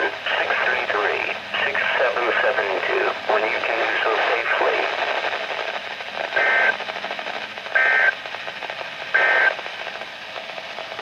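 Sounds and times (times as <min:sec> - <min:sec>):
radio static: 0:00.0 - 0:11.0.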